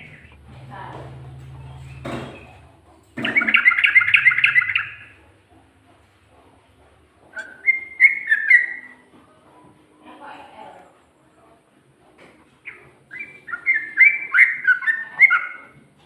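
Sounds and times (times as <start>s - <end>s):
bird chirping and whistling: 3.2s - 5.2s, 7.4s - 9.0s, 12.6s - 15.8s.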